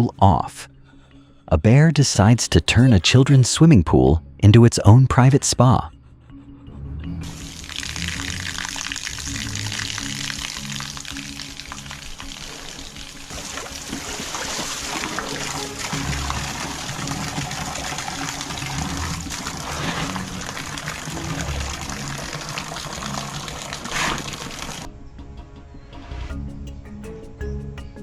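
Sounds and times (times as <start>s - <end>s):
soft background music: 0.0s - 28.0s
water splashing in a pool: 7.2s - 24.9s.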